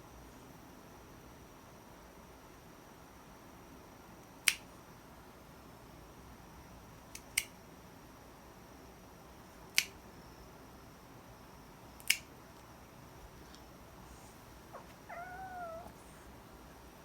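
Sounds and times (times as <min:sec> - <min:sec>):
nail clipper clicking: 0:04.4 - 0:04.6, 0:07.1 - 0:07.5, 0:09.7 - 0:10.0, 0:12.0 - 0:12.3.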